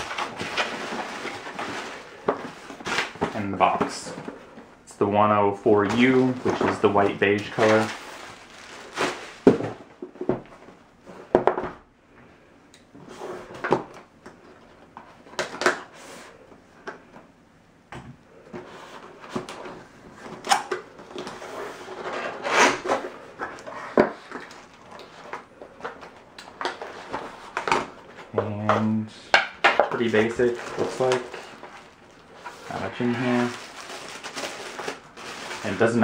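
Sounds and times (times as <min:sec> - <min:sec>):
cardboard packaging rustling: 0:00.0 - 0:04.5, 0:05.7 - 0:10.8, 0:18.6 - 0:29.0, 0:29.7 - 0:36.0.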